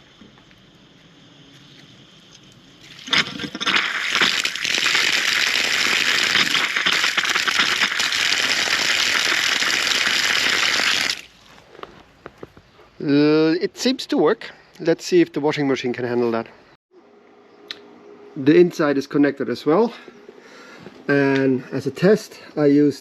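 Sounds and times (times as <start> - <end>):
air and water hissing from valve: 1.8 - 11.3.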